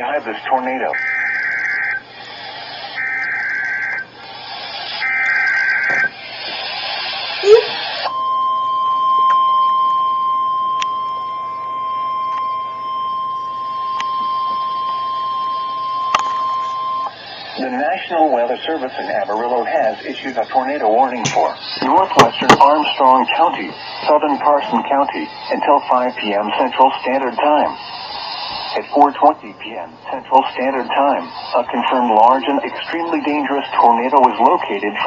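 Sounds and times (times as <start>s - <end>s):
warbling buzzy data tones: 0.0s - 8.1s, 11.4s - 35.0s
hiss: 4.2s - 5.1s, 6.1s - 8.1s, 21.6s - 28.8s
static with sharp click: 16.1s - 18.2s, 19.0s - 29.4s, 30.0s - 35.0s.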